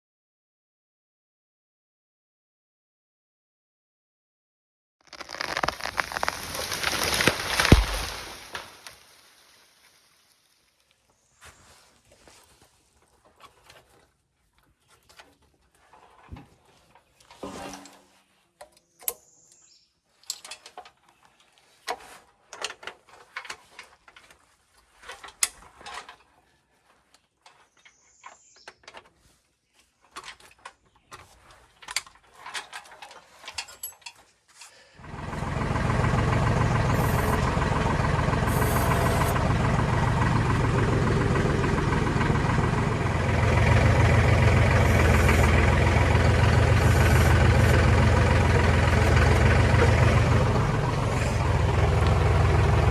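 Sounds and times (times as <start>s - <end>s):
heavy engine running: 5.1s - 9.0s, 35.0s - 52.9s.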